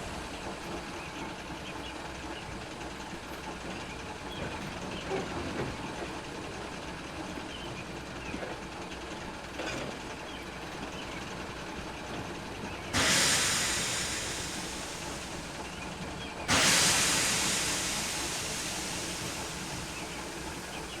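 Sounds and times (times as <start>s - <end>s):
steam engine rumble: 10.8s - 21.0s
steam hissing: 12.7s - 21.0s.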